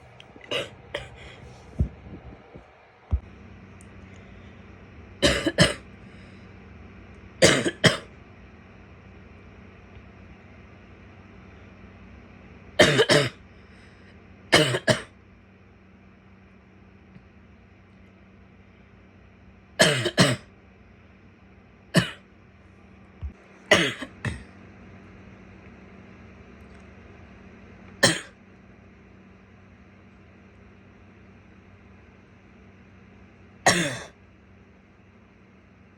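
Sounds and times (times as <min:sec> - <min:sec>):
woman coughing: 0:00.4 - 0:01.4, 0:05.2 - 0:05.8, 0:07.4 - 0:08.1, 0:12.8 - 0:13.4, 0:14.5 - 0:15.1, 0:19.8 - 0:20.5, 0:22.0 - 0:22.2, 0:23.7 - 0:24.5, 0:28.0 - 0:28.4, 0:33.7 - 0:34.2
dull low thumps: 0:01.4 - 0:03.3.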